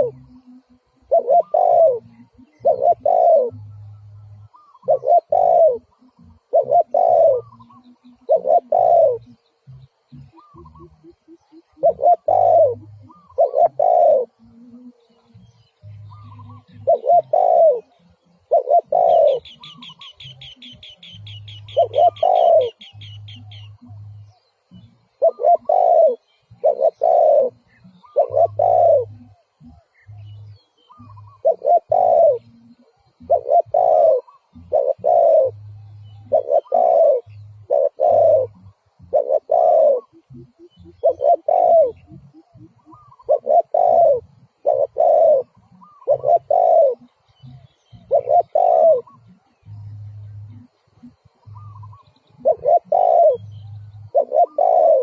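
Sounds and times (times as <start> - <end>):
dove cooing: 0.0 - 55.0.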